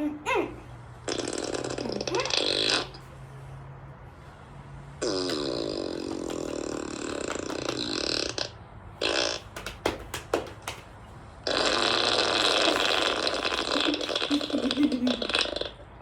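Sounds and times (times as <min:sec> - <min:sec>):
fart sound effects: 0:01.0 - 0:03.1, 0:05.0 - 0:10.7, 0:11.4 - 0:16.0
sharp clicks: 0:09.0 - 0:11.0.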